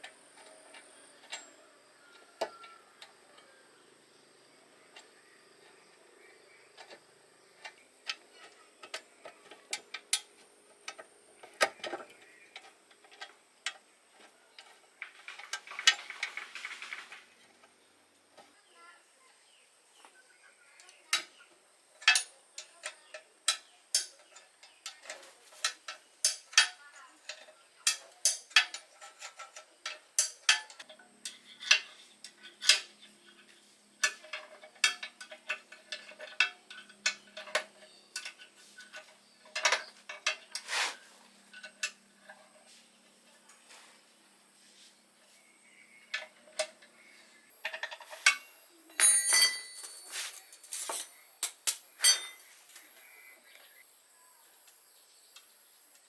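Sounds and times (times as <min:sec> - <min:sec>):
metal tools clinking: 0:22.0 - 0:42.8, 0:47.6 - 0:53.0.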